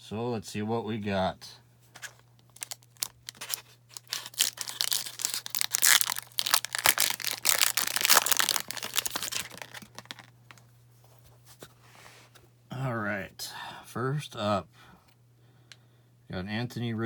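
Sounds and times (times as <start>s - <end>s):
wrapper crinkling: 2.0s - 10.6s.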